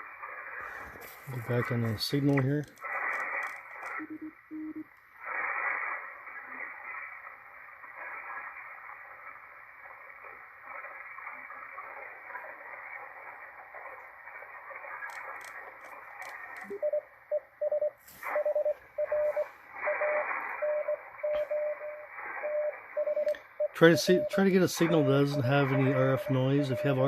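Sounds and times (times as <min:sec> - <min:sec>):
radio static hiss: 0:00.0 - 0:27.0
morse code tone: 0:04.0 - 0:04.8, 0:16.7 - 0:27.0
faint clicks: 0:15.0 - 0:16.8.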